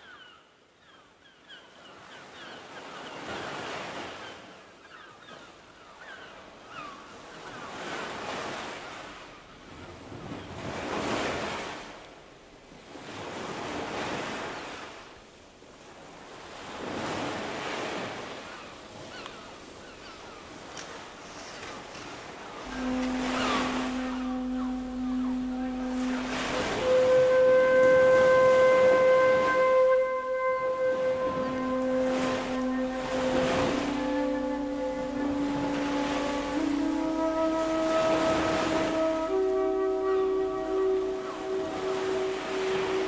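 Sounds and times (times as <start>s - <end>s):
ocean waves washing in: 7.6s - 12.0s, 12.7s - 43.0s.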